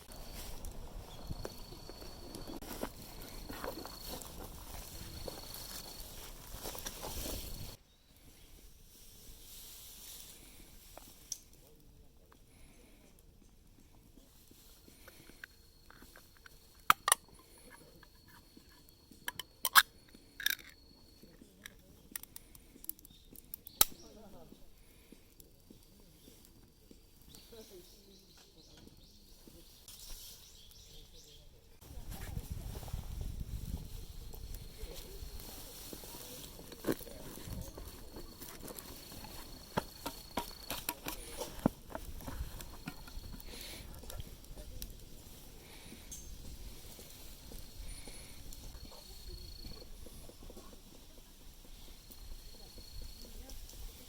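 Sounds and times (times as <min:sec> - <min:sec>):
camp cookware clicking and knocking: 0:16.4 - 0:17.5, 0:19.2 - 0:20.8.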